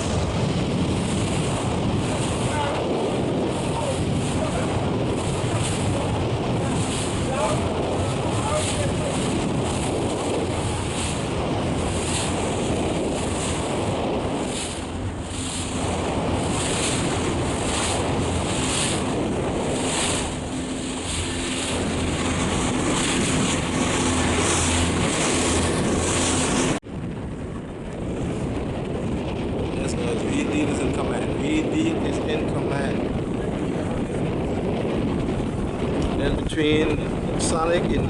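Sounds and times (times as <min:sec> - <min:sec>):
low engine drone: 0:00.0 - 0:29.6
water rushing past hull: 0:00.0 - 0:38.0
wind buffeting microphone: 0:00.0 - 0:38.0.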